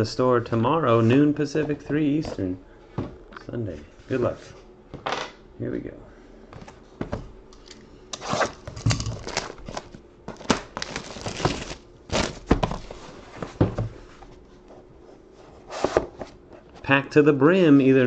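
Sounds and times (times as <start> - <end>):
plastic wrap tearing and crinkling: 8.2 - 12.5.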